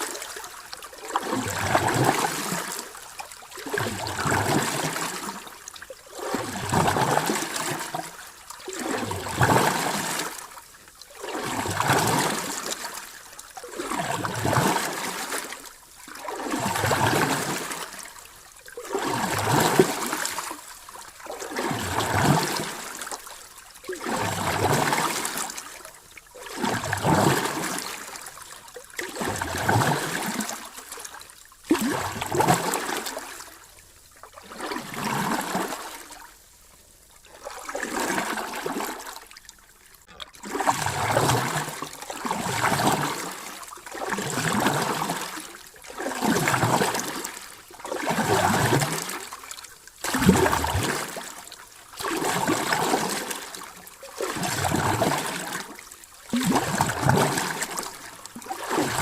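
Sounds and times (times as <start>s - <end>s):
small sea waves washing in: 0.0s - 33.8s.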